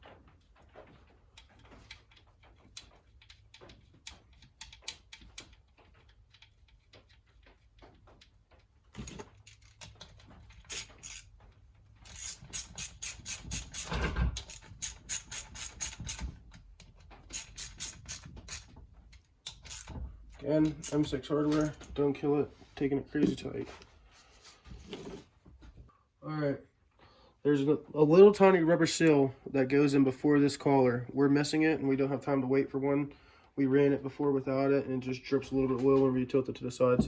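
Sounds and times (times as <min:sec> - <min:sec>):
light ticks of tool handling: 0:01.3 - 0:22.1
hand ratchet clicking: 0:09.1 - 0:11.3, 0:12.0 - 0:21.8.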